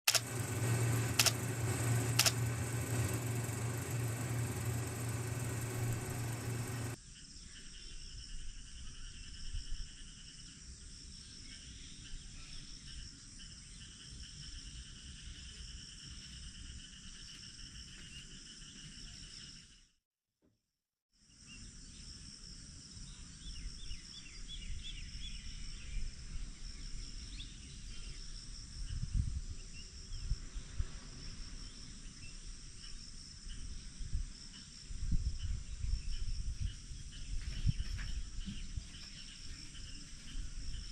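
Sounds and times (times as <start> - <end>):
low uneven rumble: 0.1 - 7.0
insect chorus trilling: 0.1 - 19.7.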